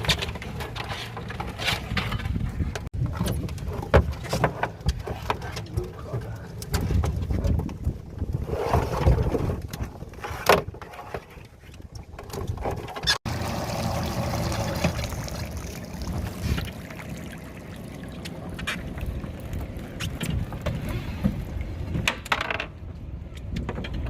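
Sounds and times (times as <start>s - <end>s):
wind on microphone: 6.7s - 10.8s.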